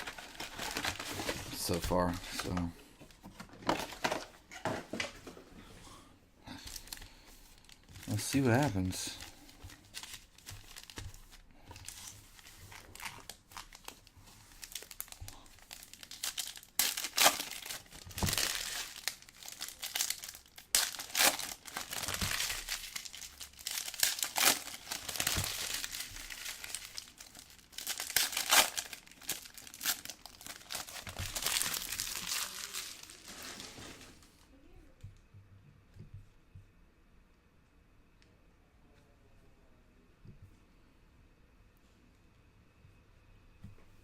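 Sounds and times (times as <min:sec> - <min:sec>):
plastic wrappers crinkling and tearing: 0:00.0 - 0:02.7, 0:03.4 - 0:04.6, 0:06.6 - 0:34.4.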